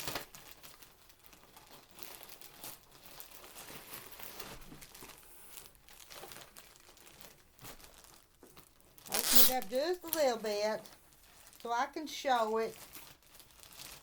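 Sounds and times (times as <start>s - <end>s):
plastic wrapping crinkling: 0.0s - 14.0s.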